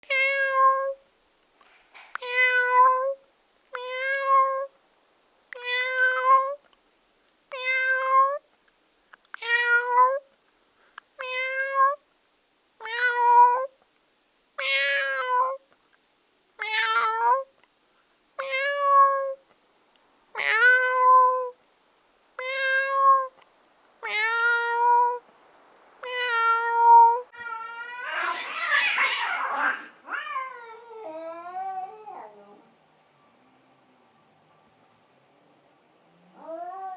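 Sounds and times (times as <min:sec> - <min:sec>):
cat meowing loudly: 0:00.0 - 0:01.0, 0:02.2 - 0:03.2, 0:03.8 - 0:04.7, 0:05.6 - 0:06.6, 0:07.5 - 0:08.4, 0:09.4 - 0:10.2, 0:11.2 - 0:12.0, 0:12.8 - 0:13.8, 0:14.6 - 0:15.6, 0:16.6 - 0:17.5, 0:18.4 - 0:19.4, 0:20.4 - 0:21.6, 0:22.4 - 0:23.4, 0:24.0 - 0:25.2, 0:26.0 - 0:31.0.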